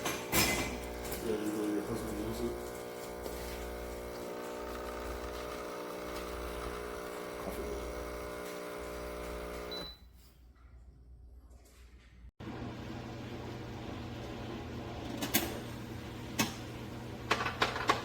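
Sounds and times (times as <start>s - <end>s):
espresso machine pump buzzing: 0.0s - 9.9s.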